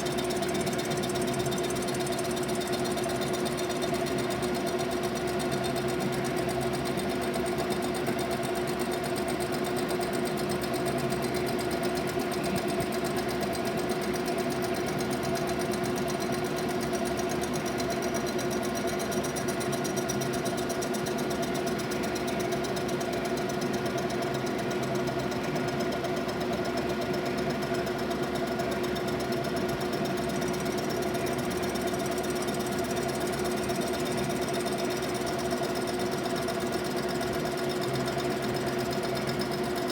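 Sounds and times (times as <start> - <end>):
machine tool humming: 0.0 - 4.6.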